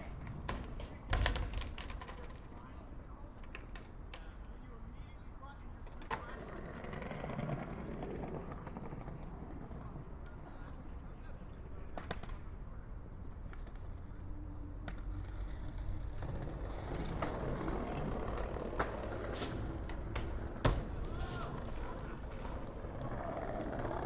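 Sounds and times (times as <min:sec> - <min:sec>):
skateboard wheels rumbling: 0:00.0 - 0:24.0.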